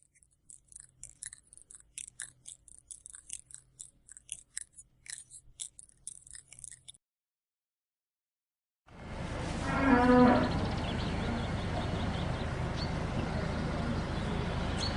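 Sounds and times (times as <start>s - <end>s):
animal chewing crunchily: 0.0s - 7.0s.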